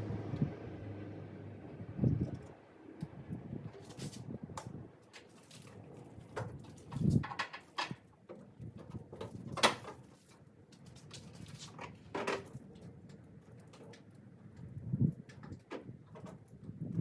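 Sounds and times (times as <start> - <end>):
clicks and knocks of tools and parts: 3.8 - 17.0.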